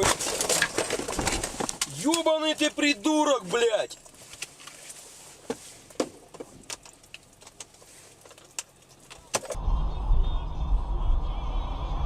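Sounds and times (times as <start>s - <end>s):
faint irregular clicks: 3.9s - 9.3s
low vehicle rumble: 9.6s - 12.0s.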